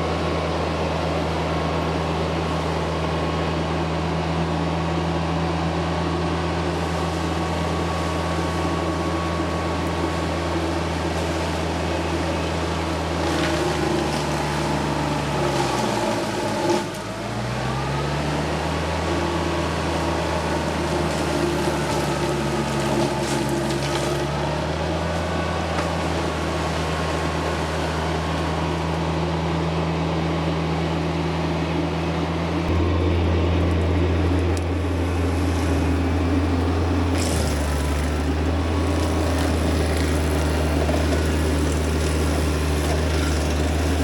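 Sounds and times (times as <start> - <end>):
tractor diesel engine running: 0.0 - 44.0.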